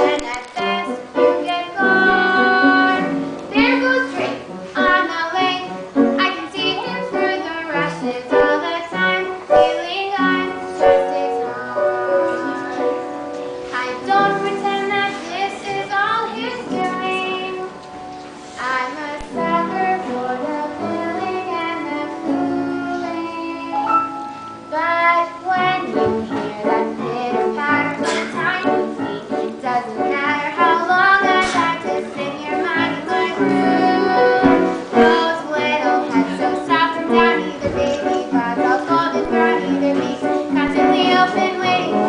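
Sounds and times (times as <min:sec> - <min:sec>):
children singing: 0:00.0 - 0:05.7, 0:25.4 - 0:42.0
instrumental accompaniment: 0:00.0 - 0:42.0.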